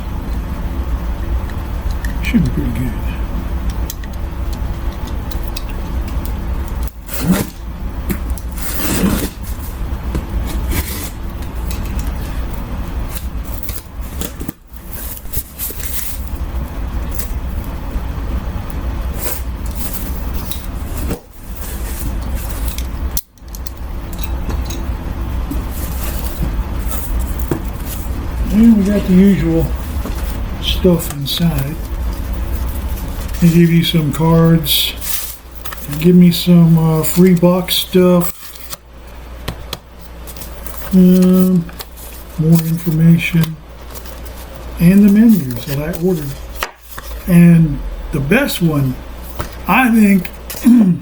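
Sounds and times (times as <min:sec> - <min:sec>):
steady low rumble: 0:00.0 - 0:51.0
cardboard and packaging rustling: 0:25.4 - 0:38.8, 0:39.5 - 0:47.3.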